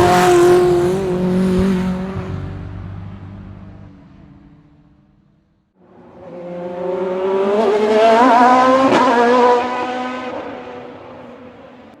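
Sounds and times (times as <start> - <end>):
race car engine accelerating: 0.0 - 3.4, 5.9 - 12.0.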